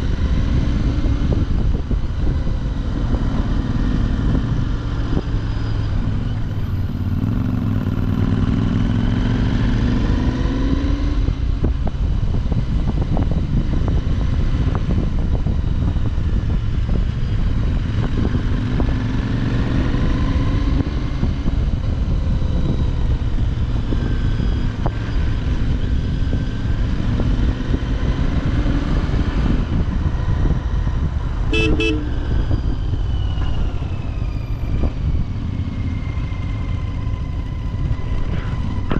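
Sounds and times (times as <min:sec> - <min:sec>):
motorcycle engine revving: 0:00.0 - 0:32.9
horn toot: 0:31.5 - 0:32.2.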